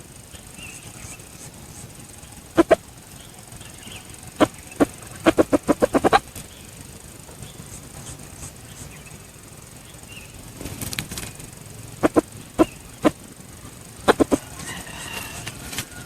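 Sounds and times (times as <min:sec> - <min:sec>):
rustling: 0:00.0 - 0:16.0
junglefowl clucking: 0:02.5 - 0:02.9, 0:03.7 - 0:06.4, 0:12.0 - 0:13.2, 0:14.0 - 0:16.0.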